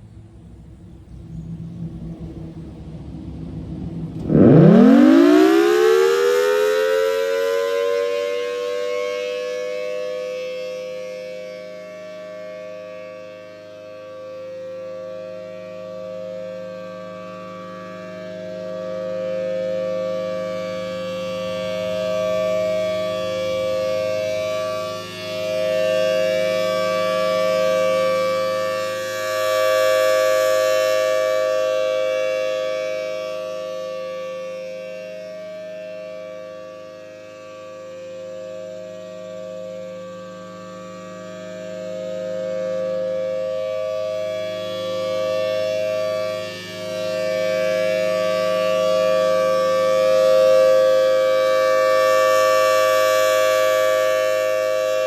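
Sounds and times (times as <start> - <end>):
low rumble: 0.0 - 5.0
warning siren two tones: 4.2 - 55.0.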